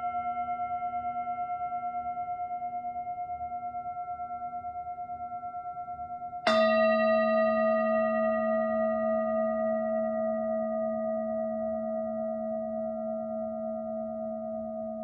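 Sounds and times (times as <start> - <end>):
singing bowl struck: 6.5 - 13.6
singing bowl ringing: 6.5 - 15.0.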